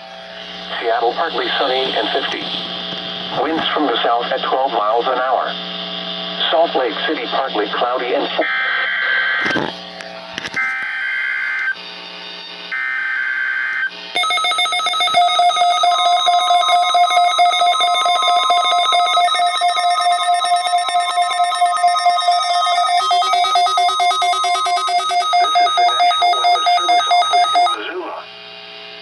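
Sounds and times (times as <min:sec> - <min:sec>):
harsh electronic data bursts: 0:00.3 - 0:03.4, 0:14.2 - 0:28.1
rapidly pulsing electronic alert tone: 0:14.2 - 0:27.8.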